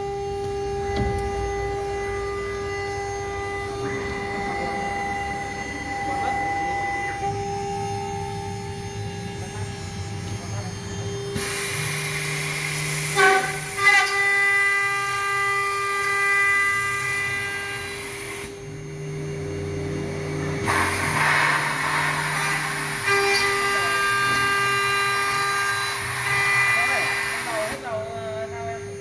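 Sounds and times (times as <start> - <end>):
low hum of motors: 0.0 - 29.0
cutter hissing in metal: 20.6 - 27.9.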